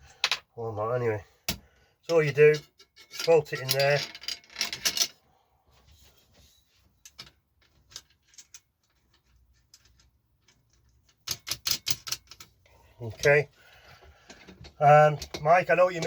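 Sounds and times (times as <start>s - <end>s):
metal clinking and tapping: 7.0s - 12.6s, 14.2s - 16.0s.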